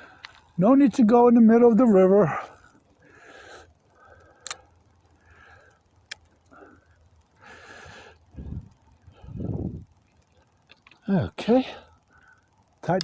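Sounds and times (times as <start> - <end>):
sharp clicks: 4.2 - 7.4, 9.9 - 11.1.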